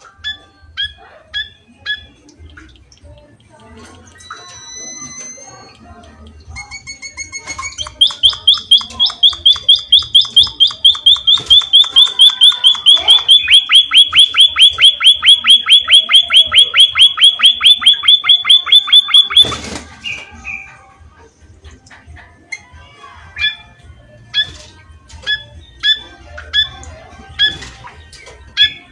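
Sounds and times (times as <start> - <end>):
bird calling with rapid sharp notes: 6.6 - 20.9, 23.3 - 28.9
bird chirps: 7.3 - 20.8.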